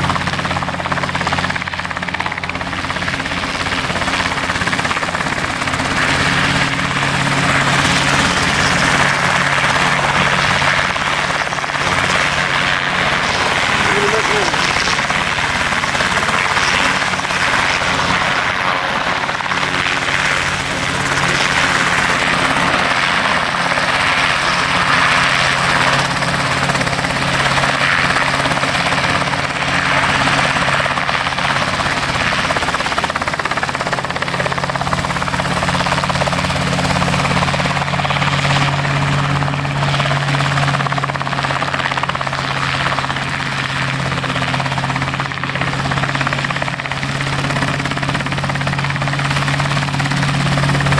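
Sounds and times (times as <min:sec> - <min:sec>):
helicopter engine drone: 0:00.0 - 0:50.9
helicopter rotor noise: 0:00.0 - 0:50.9.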